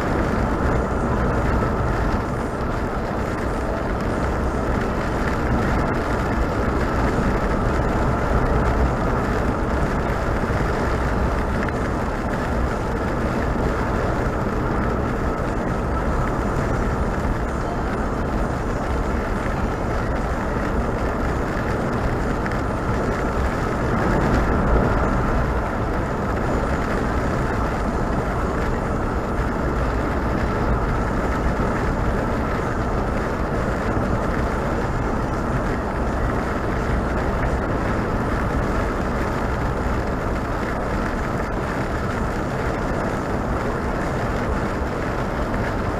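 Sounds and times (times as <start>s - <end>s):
vehicle engine and tyre rumble: 0.0s - 45.9s.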